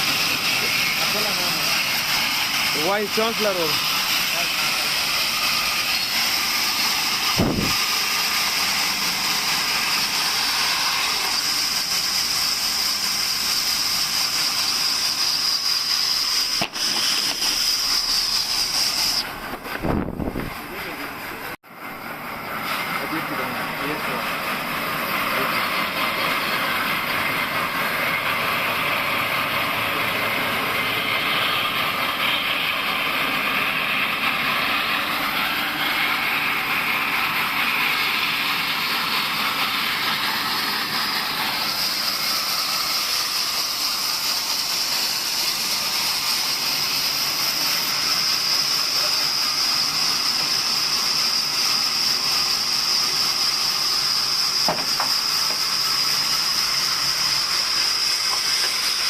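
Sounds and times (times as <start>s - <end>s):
saw cutting wood: 0.0s - 21.5s, 22.2s - 59.0s
high whine: 2.7s - 8.5s, 14.8s - 37.7s.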